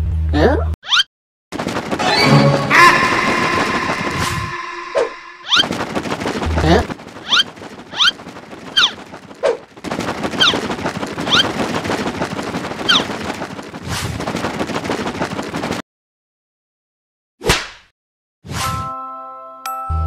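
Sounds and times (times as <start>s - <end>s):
cartoon rapid gunfire: 1.5s - 15.8s
falling ricochet zip: 1.6s - 14.3s.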